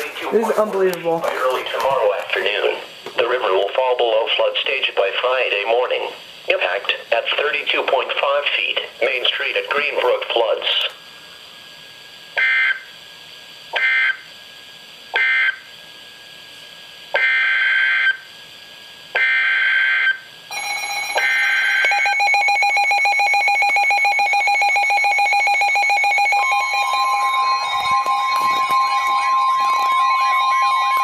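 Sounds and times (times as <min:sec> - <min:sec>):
screechy digital data bursts: 0:19.2 - 0:31.0
higher steady tone: 0:26.2 - 0:31.0.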